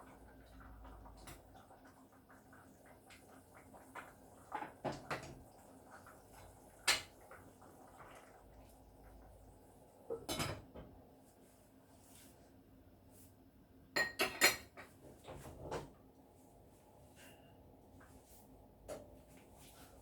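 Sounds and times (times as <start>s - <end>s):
dishes clinking: 10.1s - 10.9s, 14.0s - 15.0s.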